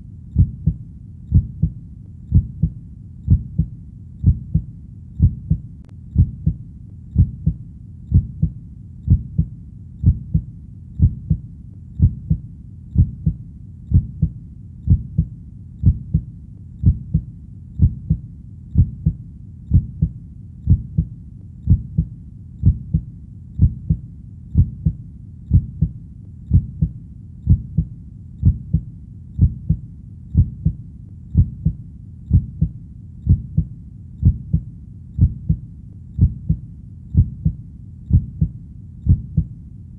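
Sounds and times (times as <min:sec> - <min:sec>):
faint low rumble: 0:00.0 - 0:39.9.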